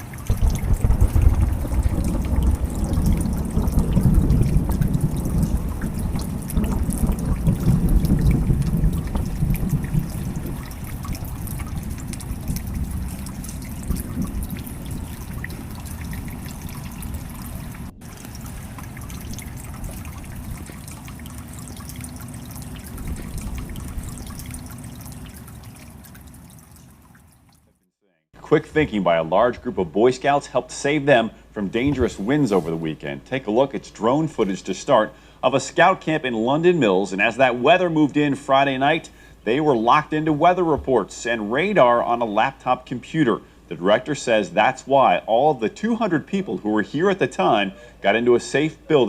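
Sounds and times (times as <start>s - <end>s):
wind rumbling on microphone: 0.0s - 26.4s, 31.8s - 32.9s
heavy rain pouring: 0.0s - 26.7s.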